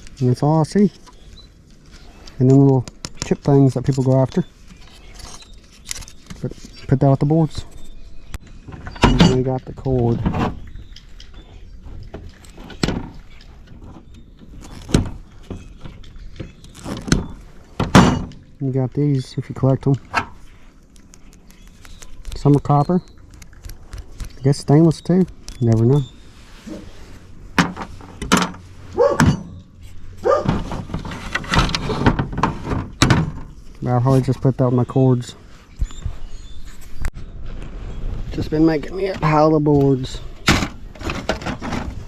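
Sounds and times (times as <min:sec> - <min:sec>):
brief squeaks: 0:04.4 - 0:06.9
scrap parts clicking and knocking: 0:30.4 - 0:33.5.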